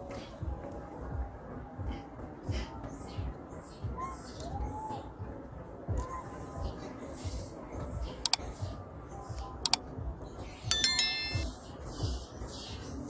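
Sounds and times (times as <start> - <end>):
background music with low beat: 0.0 - 13.0
bright ringing chime: 10.7 - 11.4.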